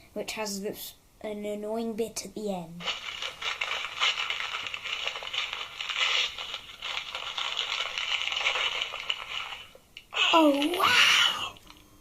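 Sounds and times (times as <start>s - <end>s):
wrapping paper tearing from speaker: 2.8s - 10.9s.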